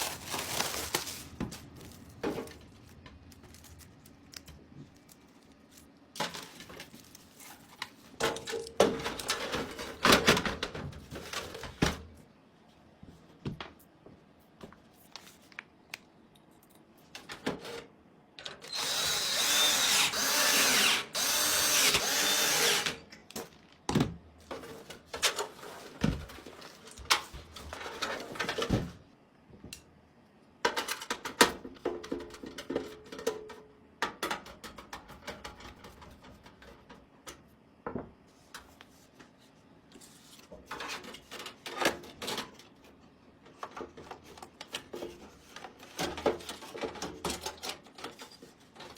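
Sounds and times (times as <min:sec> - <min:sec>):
electric drill whining: 0:18.7 - 0:23.0.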